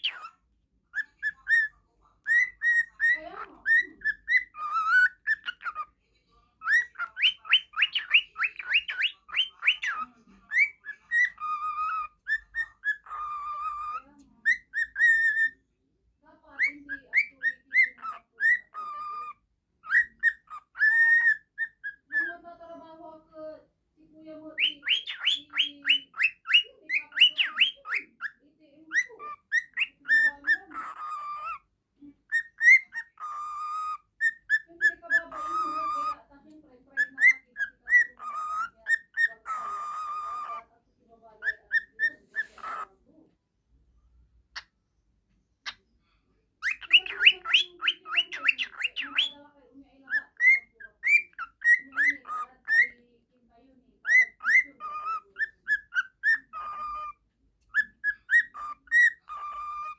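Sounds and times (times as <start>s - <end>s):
parakeet whistling and chattering: 0.0s - 15.7s, 16.4s - 22.9s, 24.2s - 43.0s, 44.5s - 44.8s, 46.6s - 53.1s, 54.0s - 59.9s.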